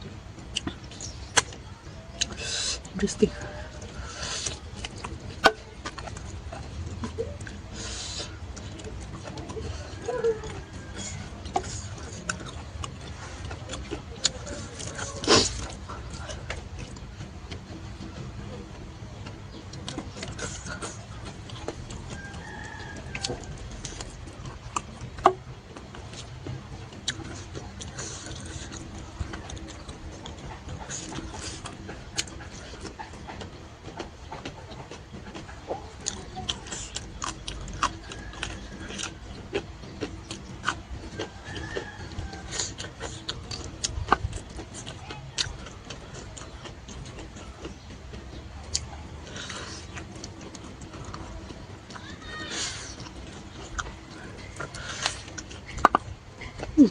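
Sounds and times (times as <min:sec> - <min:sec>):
low background rumble: 0:00.0 - 0:56.9
chewing mouth clicks and smacks: 0:00.4 - 0:56.9.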